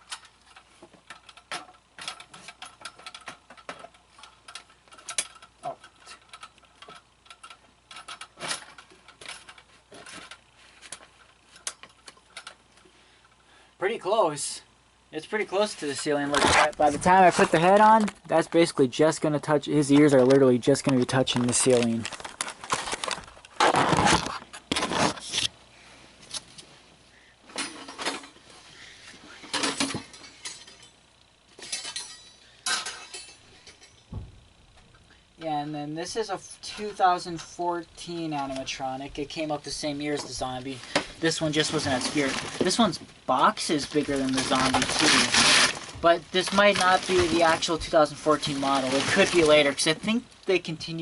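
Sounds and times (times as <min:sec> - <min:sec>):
plastic parts clicking and clattering: 0:00.0 - 0:12.6, 0:19.8 - 0:25.5, 0:29.4 - 0:31.0, 0:31.6 - 0:34.1, 0:40.2 - 0:50.2
hard parts clinking and clattering: 0:00.0 - 0:12.9, 0:27.4 - 0:28.5, 0:29.2 - 0:34.5
loud knock: 0:34.1 - 0:34.4.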